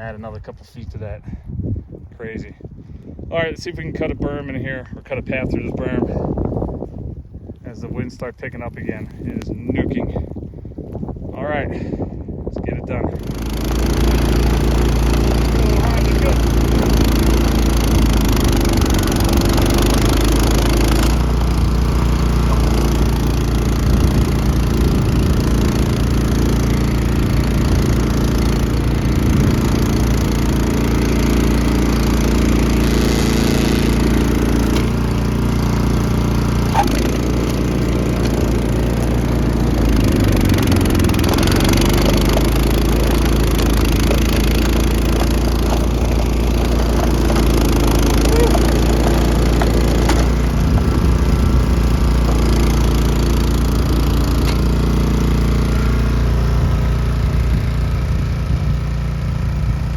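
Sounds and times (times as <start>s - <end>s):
snowblower engine running: 13.0s - 59.9s.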